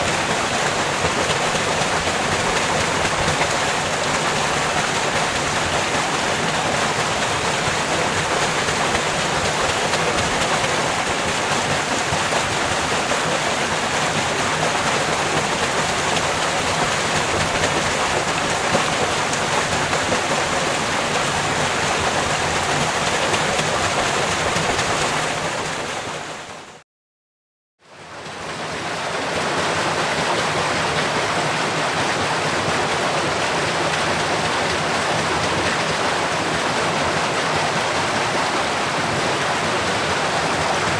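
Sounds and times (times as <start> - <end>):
falling water splashing: 0.0 - 26.6
water wheel turning: 0.0 - 26.7, 28.2 - 40.9.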